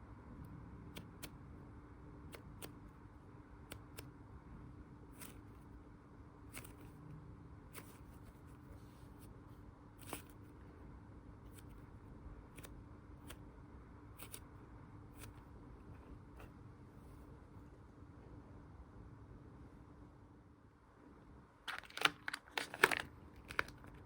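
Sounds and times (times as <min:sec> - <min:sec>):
low steady hum: 0:00.0 - 0:24.0
squishy toys clicking and rustling: 0:21.7 - 0:24.0.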